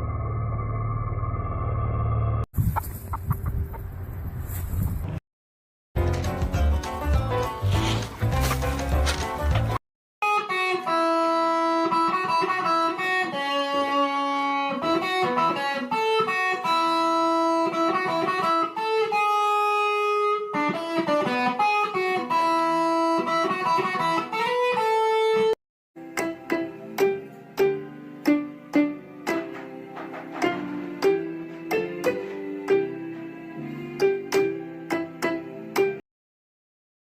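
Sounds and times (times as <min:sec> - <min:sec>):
plucked guitar melody: 0:10.4 - 0:25.5, 0:26.1 - 0:33.2.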